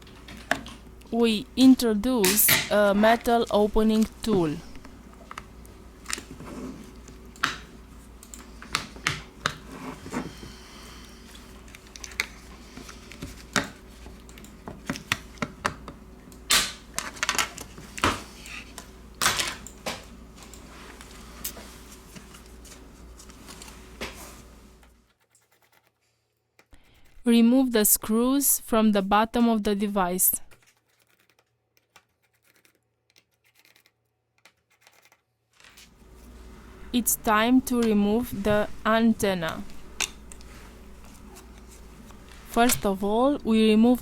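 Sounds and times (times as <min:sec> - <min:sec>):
steady low hum: 0:00.0 - 0:24.9, 0:35.9 - 0:44.0.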